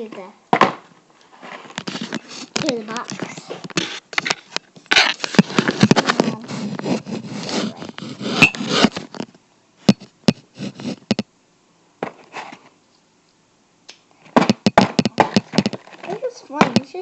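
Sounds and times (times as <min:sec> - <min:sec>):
scissors scraping through cardboard: 0:01.4 - 0:09.2, 0:10.3 - 0:11.2.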